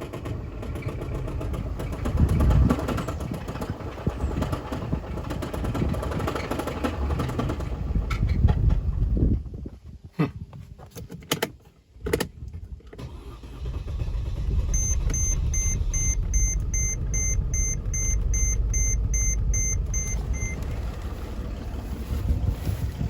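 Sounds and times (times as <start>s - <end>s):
diesel engine starting and running: 0.0s - 9.4s, 12.9s - 23.0s
warning chime beeping: 14.7s - 20.6s.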